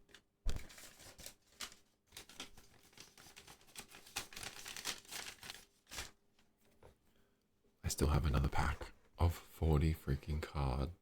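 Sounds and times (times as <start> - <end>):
wrapper crinkling: 0.6 - 6.2.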